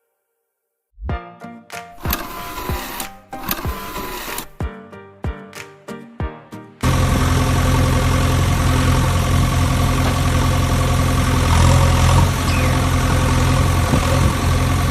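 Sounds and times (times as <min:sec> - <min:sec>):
engine idling with low hum: 0:06.8 - 0:14.9.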